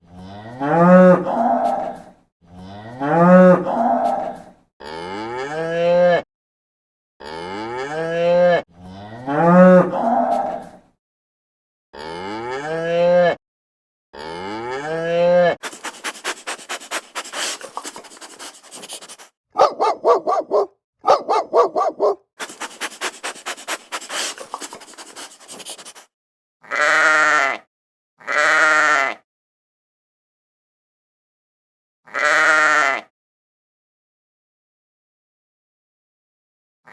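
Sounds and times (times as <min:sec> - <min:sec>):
cow mooing: 0:00.2 - 0:02.0, 0:02.6 - 0:04.4, 0:08.8 - 0:10.7
dog barking: 0:15.6 - 0:26.0.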